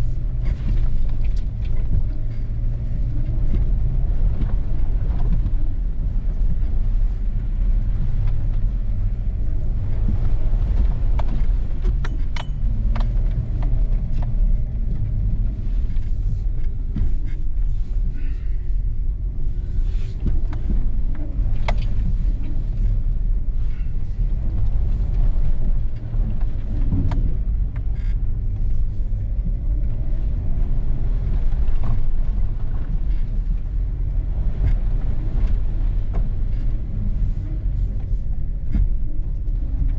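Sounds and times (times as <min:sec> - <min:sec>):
engine and road rumble: 0:00.0 - 0:39.9.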